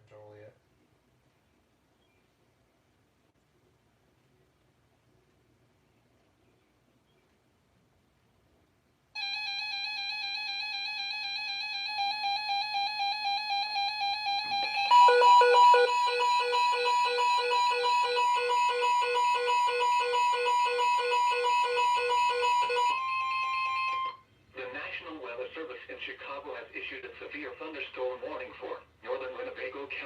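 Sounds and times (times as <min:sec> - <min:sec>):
steady alarm tone: 0:09.2 - 0:24.2
pulsing electronic tone: 0:10.9 - 0:24.2
rapid beeping: 0:11.0 - 0:24.1.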